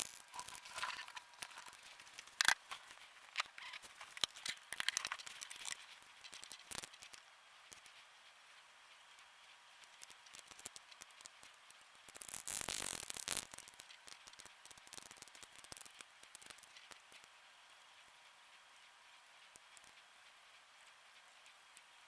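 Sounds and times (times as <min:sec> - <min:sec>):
plastic controller parts clicking: 0:00.1 - 0:07.1.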